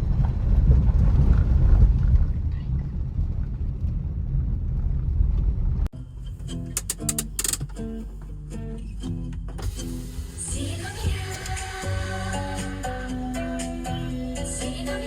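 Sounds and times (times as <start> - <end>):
car road and engine rumble: 0.0 - 15.0
quiet guitar music: 6.0 - 15.0.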